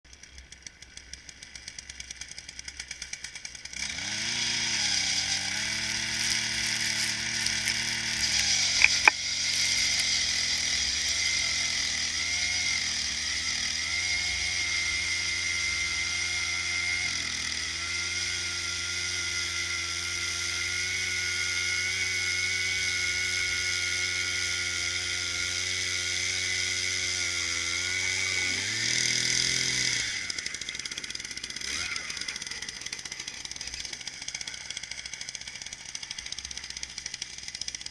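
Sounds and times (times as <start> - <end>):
ice auger engine: 0.1 - 37.9
sharp clicks: 8.7 - 9.2.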